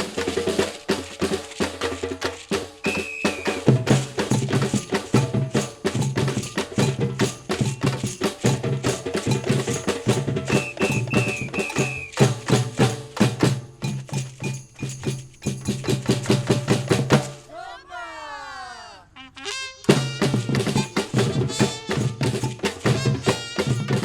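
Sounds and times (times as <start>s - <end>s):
samba percussion group: 0.0s - 17.6s, 19.9s - 24.0s
high whistle blasts: 2.8s - 3.8s, 10.5s - 12.3s.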